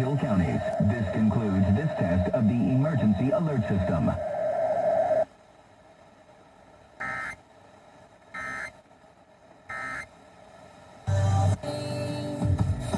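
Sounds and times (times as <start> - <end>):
loud broadcast audio: 0.0 - 5.3.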